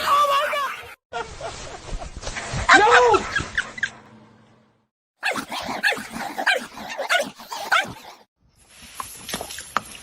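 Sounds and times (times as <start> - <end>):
dog barking and whining: 5.2 - 8.3.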